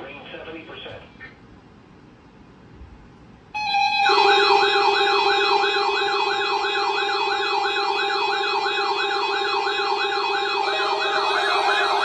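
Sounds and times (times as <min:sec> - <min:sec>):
steady electronic tone: 0:03.6 - 0:12.0
warbling siren-like tone: 0:03.6 - 0:12.0.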